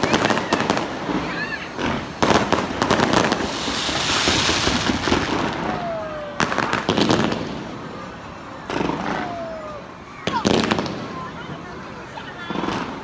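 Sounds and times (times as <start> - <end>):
firework bangs and cracks: 0.0 - 9.2
crackling hiss of sparkling shells: 2.0 - 6.2.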